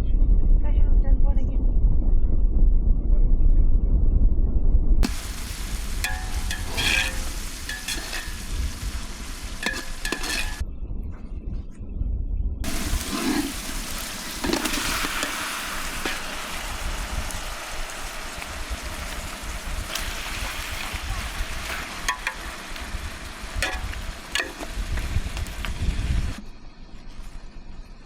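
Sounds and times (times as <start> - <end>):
food sizzling and frying: 5.0 - 10.6, 12.6 - 26.4.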